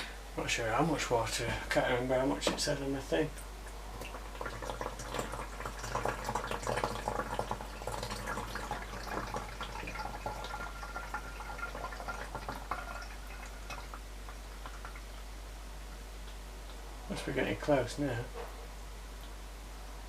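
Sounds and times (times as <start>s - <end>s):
water pouring into a tank: 3.8s - 15.3s.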